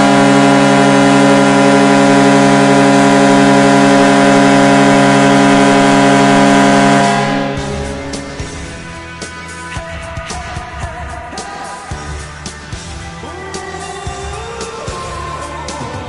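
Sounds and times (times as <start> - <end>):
deep goal horn blast: 0.0 - 9.6.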